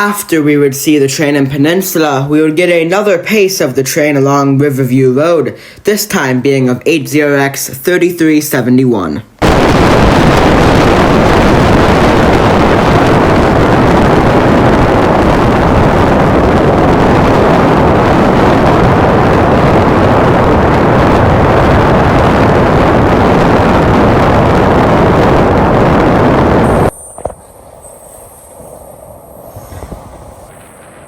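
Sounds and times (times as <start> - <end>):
wind buffeting microphone: 9.4 - 31.0.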